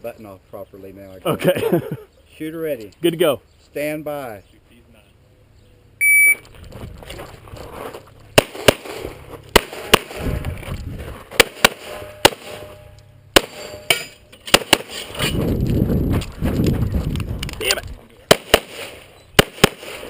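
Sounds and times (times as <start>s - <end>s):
pistol shots: 8.4s - 10.4s, 11.3s - 15.1s, 18.3s - 20.0s.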